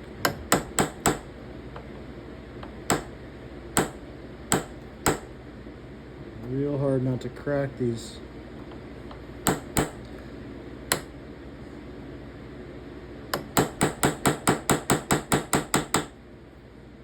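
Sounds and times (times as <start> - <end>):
hammer tapping on metal: 0.2 - 1.3, 2.6 - 3.1, 3.8 - 5.3, 9.4 - 10.0, 10.9 - 11.1, 13.3 - 16.1.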